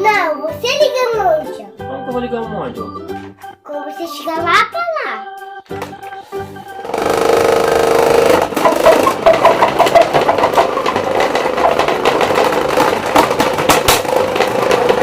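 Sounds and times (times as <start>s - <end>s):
rapid plastic clicking: 6.9s - 15.0s.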